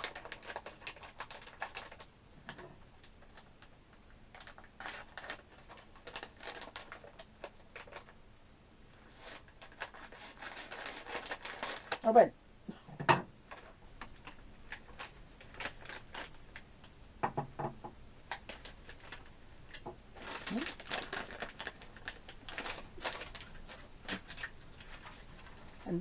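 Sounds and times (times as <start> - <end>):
plastic wrapper crinkling: 0.0 - 8.2, 9.0 - 12.1, 13.5 - 16.6, 18.2 - 26.0.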